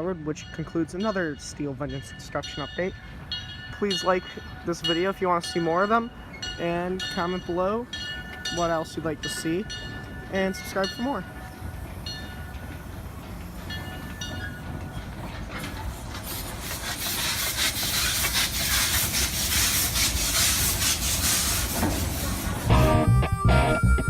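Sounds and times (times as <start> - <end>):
train bell ringing: 0.0 - 15.3, 22.7 - 24.0
train wheels clattering: 0.0 - 22.8
steam hissing: 11.2 - 22.8.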